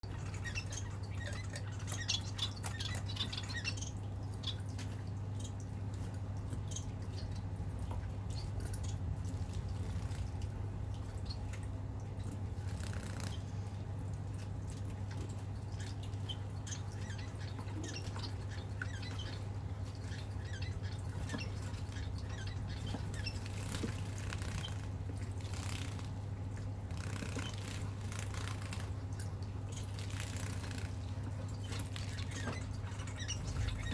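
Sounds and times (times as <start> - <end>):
steady low hum: 0.0 - 33.9
small water splashes: 0.1 - 33.9
wing flutters: 9.3 - 10.6, 12.5 - 13.6, 21.0 - 33.9.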